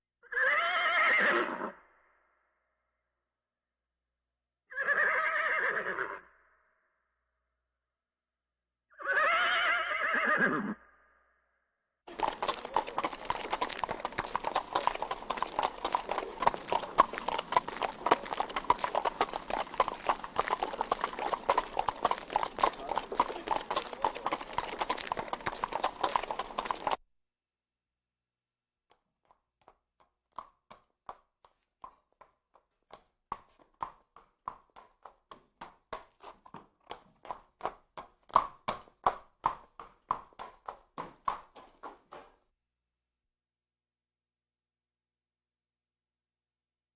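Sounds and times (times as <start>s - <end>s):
horse whinnying: 0.2s - 1.9s, 4.7s - 6.4s, 8.9s - 10.9s, 12.1s - 27.0s
hooves clip-clopping on concrete: 12.1s - 27.0s, 28.9s - 42.4s.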